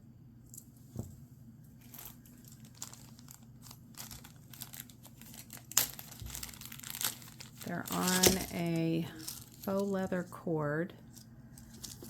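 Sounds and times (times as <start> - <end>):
packaging crinkling and rustling: 1.7 - 10.4, 11.0 - 12.0.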